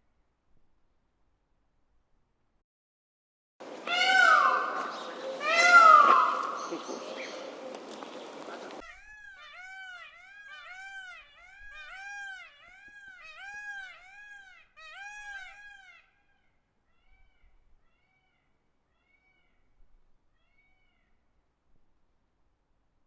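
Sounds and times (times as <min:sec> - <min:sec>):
peacock calling: 0:03.6 - 0:14.0.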